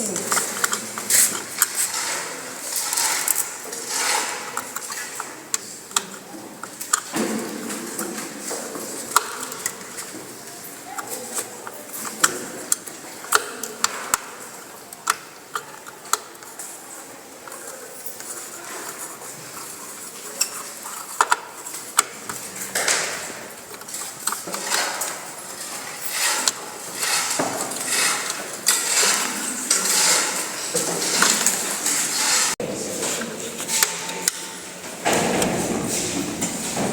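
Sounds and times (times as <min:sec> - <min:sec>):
metal parts scraping and rattling: 0:00.0 - 0:36.9.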